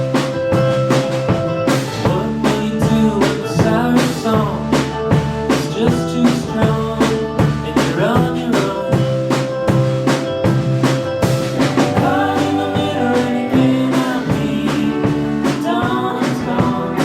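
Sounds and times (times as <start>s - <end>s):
live rock band playing: 0.0s - 17.0s
sliding melodic line: 11.4s - 15.5s.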